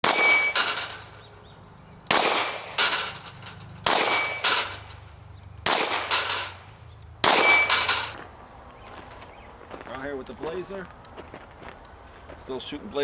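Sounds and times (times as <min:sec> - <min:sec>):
pistol shots: 0:00.0 - 0:08.2
steel plates clanging: 0:00.0 - 0:08.2.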